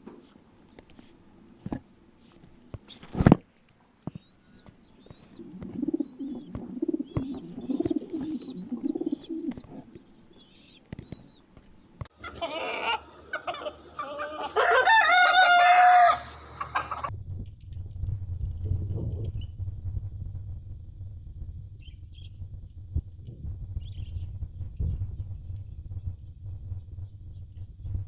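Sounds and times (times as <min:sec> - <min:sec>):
small birds chirping: 0:04.0 - 0:12.1, 0:21.8 - 0:22.4, 0:23.7 - 0:28.0
pigeons cooing: 0:05.0 - 0:10.7.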